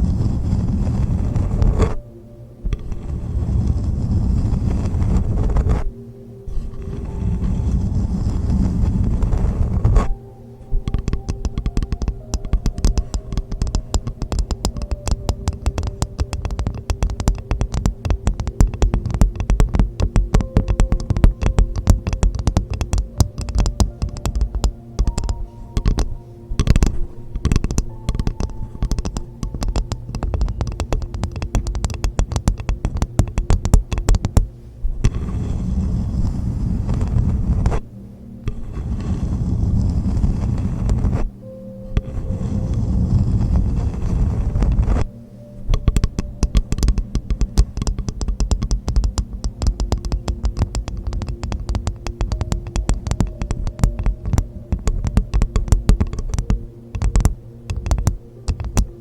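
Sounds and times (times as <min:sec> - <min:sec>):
low rushing noise: 0:00.0 - 0:59.0
tapping on hollow coconut shell: 0:10.9 - 0:34.5, 0:45.7 - 0:58.9.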